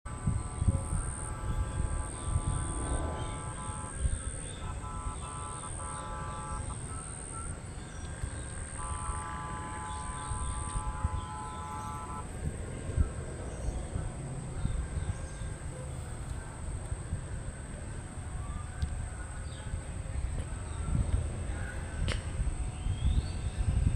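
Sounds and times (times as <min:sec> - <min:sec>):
low rumble: 0:00.1 - 0:06.7
horn blasts: 0:00.1 - 0:13.6
steady high-pitched tone: 0:00.1 - 0:14.2.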